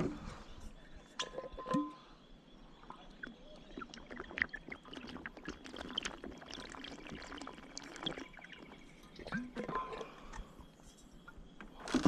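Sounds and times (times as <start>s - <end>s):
water splashing and dripping: 2.8s - 10.5s.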